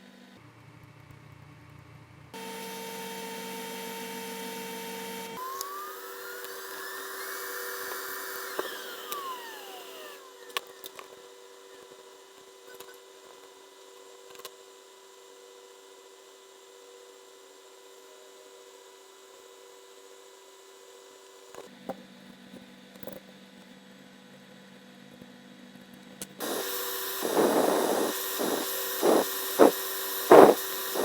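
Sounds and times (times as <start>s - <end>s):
small electric tool motor whine: 2.4s - 13.0s, 26.4s - 31.0s
steady electrical hum: 26.4s - 31.0s.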